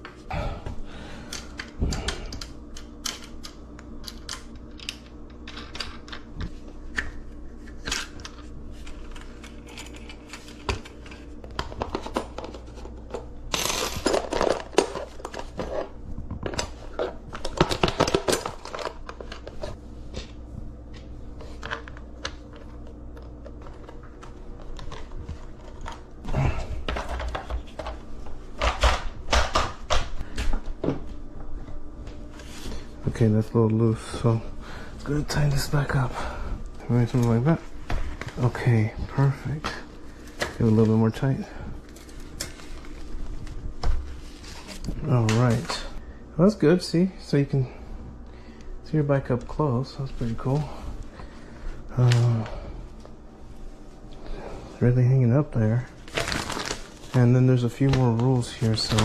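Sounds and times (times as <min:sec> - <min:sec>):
metal parts clinking and knocking: 0:13.5 - 0:15.1.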